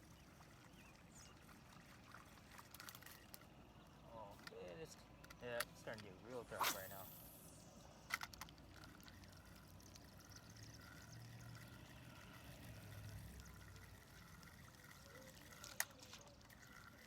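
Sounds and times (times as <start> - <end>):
sharp click: 6.6 - 7.4.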